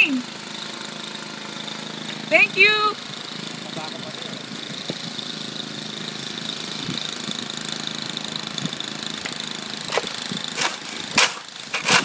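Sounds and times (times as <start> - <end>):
small engine running: 0.0 - 12.0
sharp knocks or scrapes: 9.9 - 12.0.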